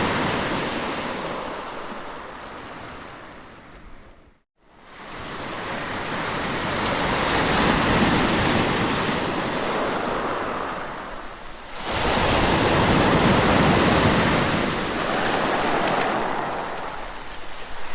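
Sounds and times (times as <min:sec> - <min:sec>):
ocean waves washing in: 0:04.7 - 0:17.9.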